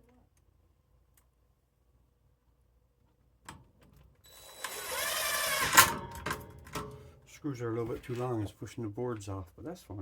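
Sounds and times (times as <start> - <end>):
screw gun motor whine: 4.3 - 6.0.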